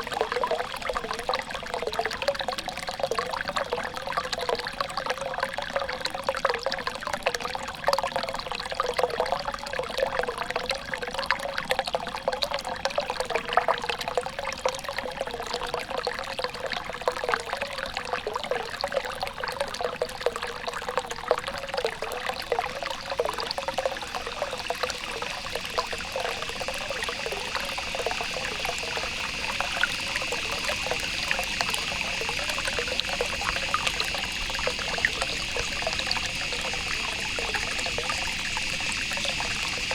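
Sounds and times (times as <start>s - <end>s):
stream trickling over stones: 0.0s - 7.7s, 19.5s - 39.9s
high-pitched hum: 22.4s - 39.9s.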